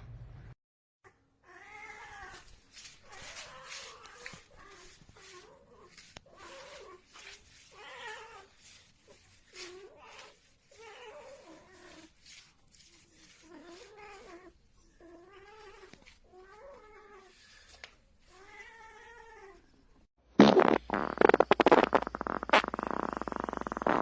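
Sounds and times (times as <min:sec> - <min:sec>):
loud rasping noise with clicks: 0:20.4 - 0:24.0.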